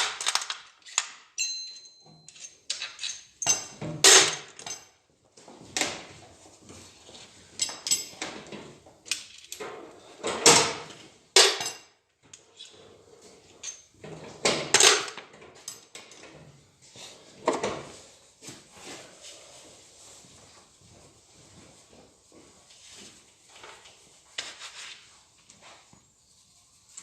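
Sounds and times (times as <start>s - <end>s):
metal tools clanking: 1.4s - 4.9s.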